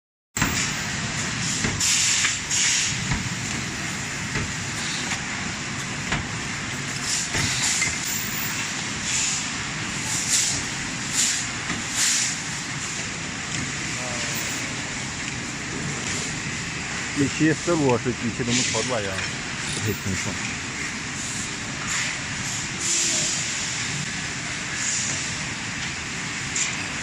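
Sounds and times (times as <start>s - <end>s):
short air hisses: 1.4s - 3.0s, 9.0s - 9.5s, 21.2s - 23.8s.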